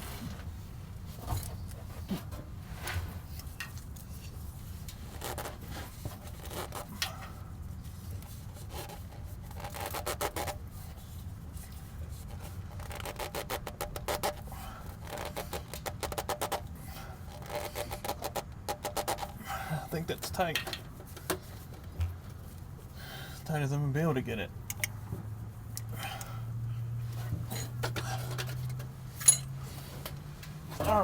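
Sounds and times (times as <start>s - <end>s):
steady low hum: 19.1s - 31.0s.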